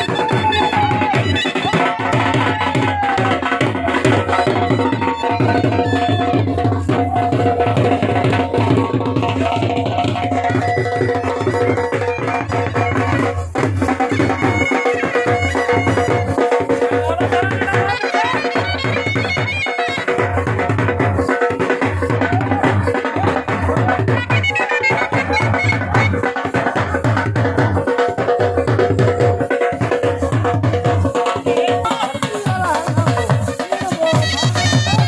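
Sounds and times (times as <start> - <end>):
drum beating quick rhythm: 0.0 - 35.0
droning wind instrument: 33.4 - 35.0.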